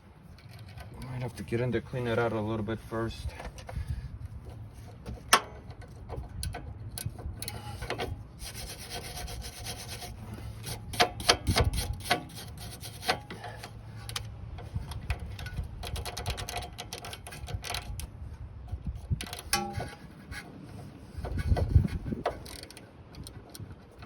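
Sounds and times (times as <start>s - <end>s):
hand tool scraping metal: 4.5s - 18.0s, 19.2s - 24.0s
sharp metal clicks: 10.7s - 18.2s.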